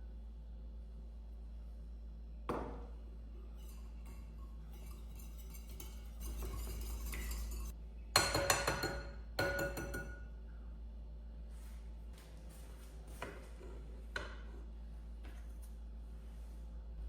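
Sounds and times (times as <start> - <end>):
dishes and cutlery clinking: 3.5 - 10.3.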